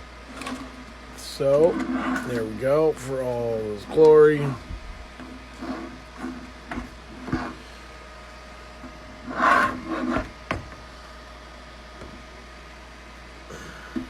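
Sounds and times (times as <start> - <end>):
rubbing scrape: 1.6 - 2.4, 5.5 - 6.5, 9.2 - 10.3.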